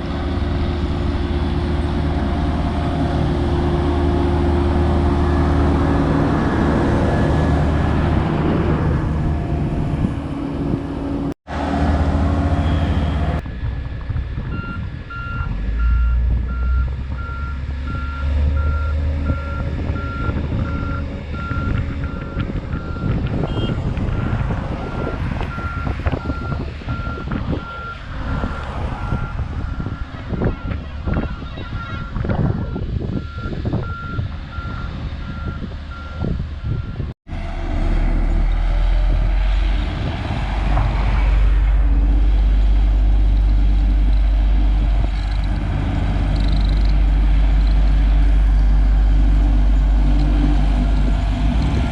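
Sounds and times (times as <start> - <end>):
diesel machinery low rumble: 0.0 - 51.9
reversing alarm beeping: 14.5 - 37.0.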